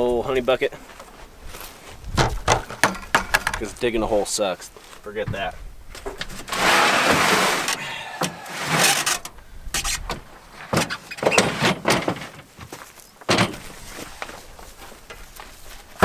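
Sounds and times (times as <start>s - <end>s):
knocks and clacks of gear: 2.2s - 3.9s
gear scraping slide: 6.3s - 10.1s.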